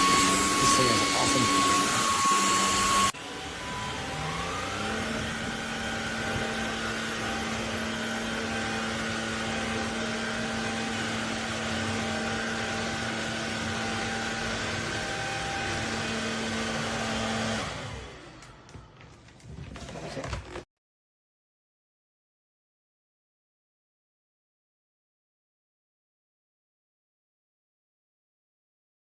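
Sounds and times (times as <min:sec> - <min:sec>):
stick vacuum motor whining: 0:00.0 - 0:20.6.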